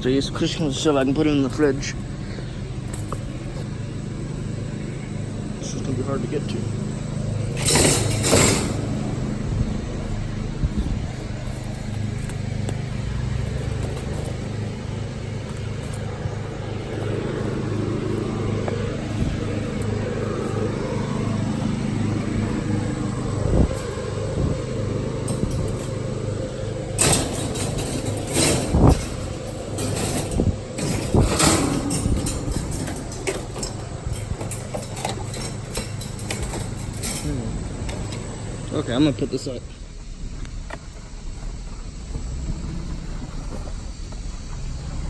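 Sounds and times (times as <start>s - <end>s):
vehicle engine humming: 0.0s - 45.0s
sharp knocks and clatters: 7.3s - 9.1s.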